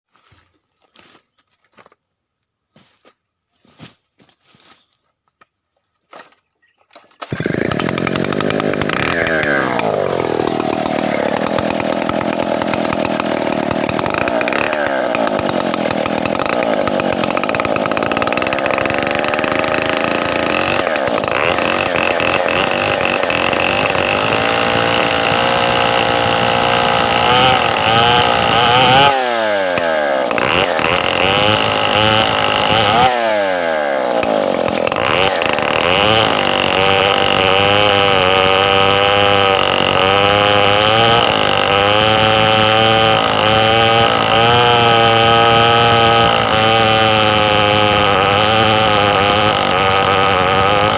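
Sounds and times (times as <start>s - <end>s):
chainsaw revving: 7.2s - 50.9s.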